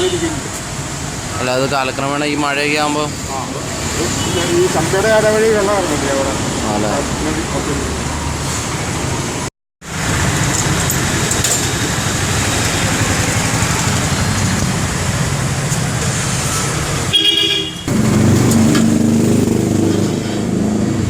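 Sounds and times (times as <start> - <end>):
road traffic rumble: 0.0 - 21.0
car horn toot: 17.1 - 17.9.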